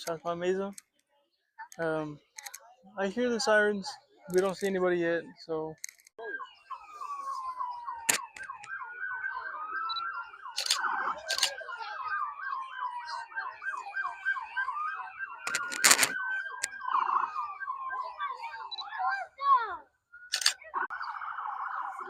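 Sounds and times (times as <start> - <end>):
sharp clicks: 2.4 - 2.6, 20.3 - 20.6
siren wailing: 6.2 - 22.0
siren yelping: 6.2 - 22.0.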